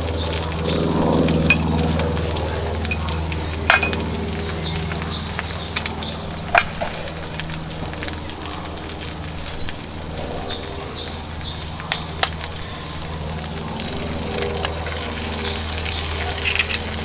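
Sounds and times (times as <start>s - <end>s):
bird chirping: 0.0s - 6.6s, 9.5s - 17.0s
campfire sizzling and crackling: 0.0s - 17.0s
fire popping: 0.0s - 17.0s.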